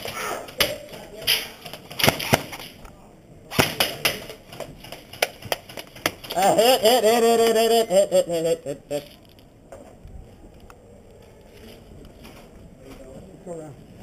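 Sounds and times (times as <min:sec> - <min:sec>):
airsoft gun shots: 0:01.3 - 0:02.7.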